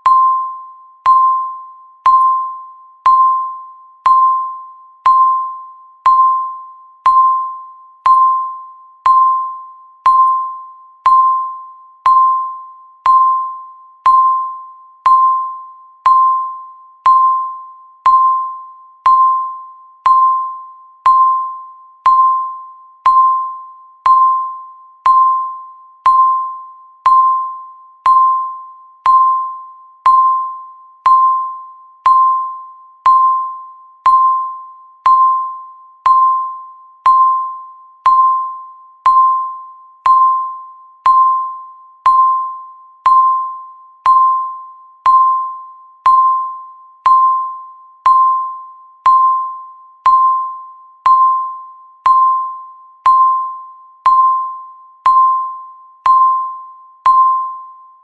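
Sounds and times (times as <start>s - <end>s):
timer beep with sharp click: 0.0s - 58.0s.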